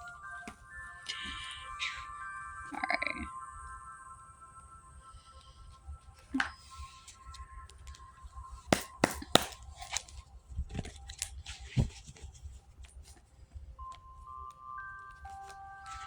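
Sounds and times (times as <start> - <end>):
soft background music: 0.0 - 16.0
cards snapping and clicking: 8.8 - 10.2.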